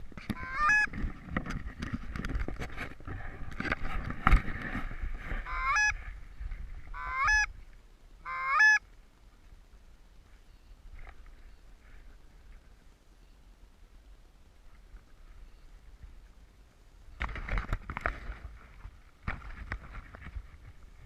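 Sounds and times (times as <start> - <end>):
rustling and clicking: 0.0 - 5.4, 17.2 - 21.0
goose honks: 0.3 - 0.9, 5.4 - 6.0, 7.0 - 7.5, 8.2 - 8.8.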